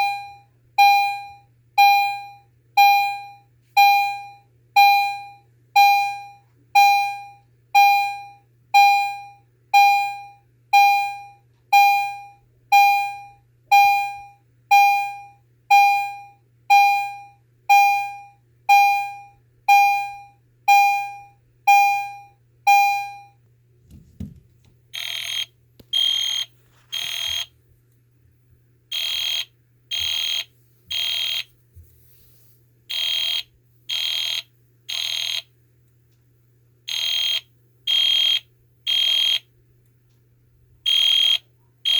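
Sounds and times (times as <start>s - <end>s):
thump: 23.9s - 24.5s.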